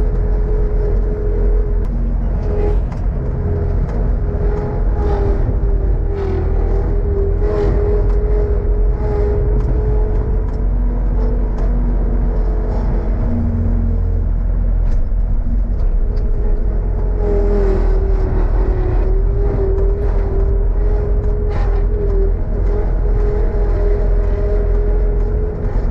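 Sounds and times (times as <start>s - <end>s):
vehicle engine running: 0.0s - 25.9s.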